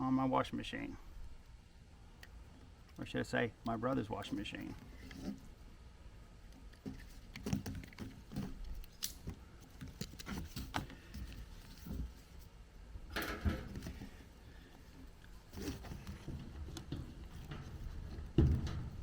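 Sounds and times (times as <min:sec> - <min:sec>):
scraping rustle: 0:04.1 - 0:05.6, 0:06.6 - 0:12.5, 0:13.4 - 0:19.0
plastic hose handling clicks and rustles: 0:06.4 - 0:12.5, 0:13.1 - 0:19.0.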